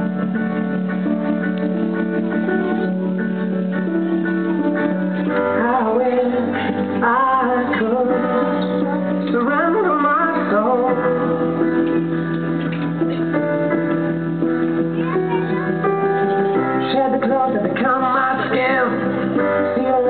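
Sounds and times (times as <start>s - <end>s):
person singing: 5.3s - 12.3s, 15.0s - 20.0s.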